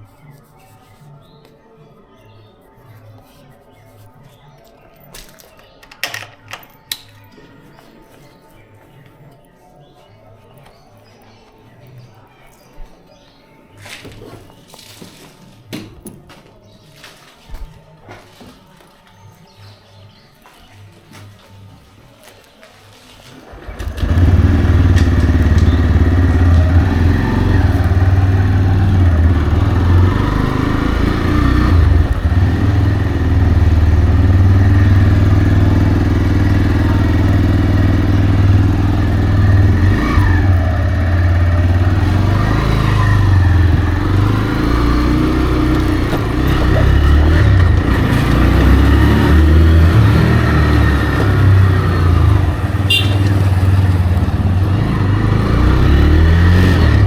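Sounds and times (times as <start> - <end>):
motorcycle engine running: 23.4 - 57.0.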